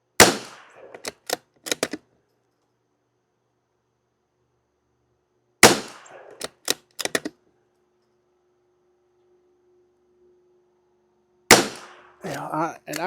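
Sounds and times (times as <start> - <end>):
rifle shot: 0.2 - 1.8, 5.6 - 7.2, 11.5 - 12.2
rifle bolt metallic clicks: 0.8 - 2.0, 6.1 - 7.4.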